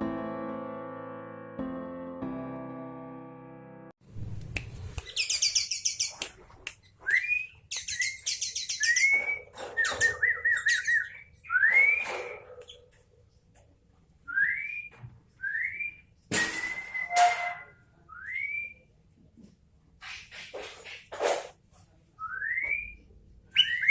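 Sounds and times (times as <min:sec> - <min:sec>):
bird chattering: 0:05.0 - 0:06.2, 0:07.7 - 0:09.1
bird trill: 0:05.1 - 0:06.2, 0:07.7 - 0:12.8.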